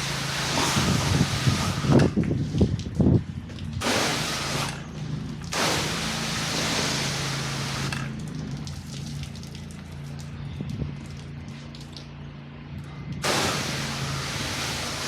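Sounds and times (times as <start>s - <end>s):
pressure washer spray hissing: 0.0s - 2.0s, 3.8s - 4.8s, 5.5s - 8.0s, 13.2s - 15.0s
pressure washer engine drone: 0.0s - 15.0s.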